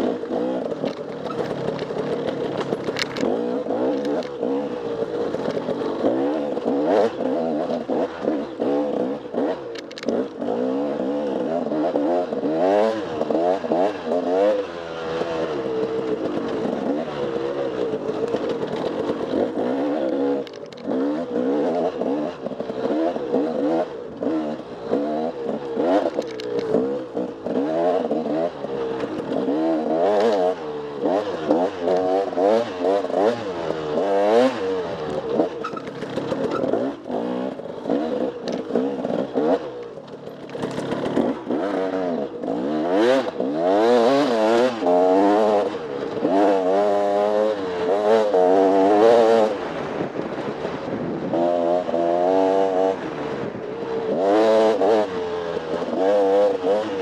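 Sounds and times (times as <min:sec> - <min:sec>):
motorcycle engine revving: 0:00.0 - 0:57.0
motorcycle knocking over rough ground: 0:00.2 - 0:06.7, 0:17.8 - 0:19.7, 0:35.0 - 0:36.9, 0:40.0 - 0:41.6.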